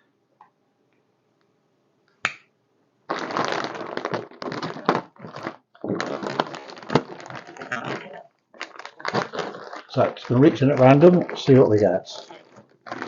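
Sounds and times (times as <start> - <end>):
plastic bag crinkling: 3.1 - 13.0
plastic bag snapping open: 3.1 - 13.0.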